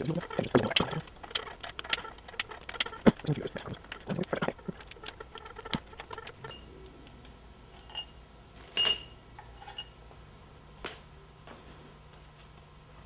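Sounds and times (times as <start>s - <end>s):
metal tools clinking: 8.8s - 10.0s.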